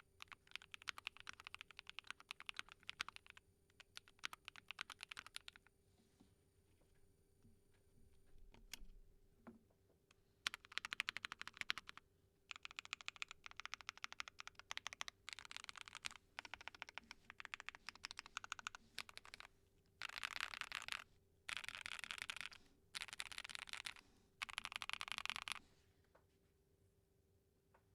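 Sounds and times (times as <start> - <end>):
mechanical keyboard typing: 0.2 - 5.6, 10.4 - 25.6.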